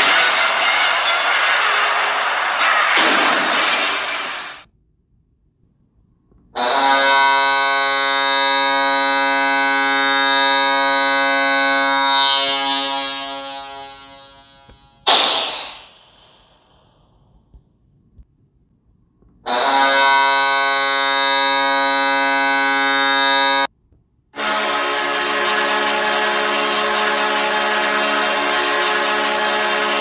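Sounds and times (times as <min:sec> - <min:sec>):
hockey goal horn blast: 0:06.6 - 0:15.3, 0:19.5 - 0:23.7, 0:24.4 - 0:30.0
short burst of noise: 0:15.1 - 0:17.3.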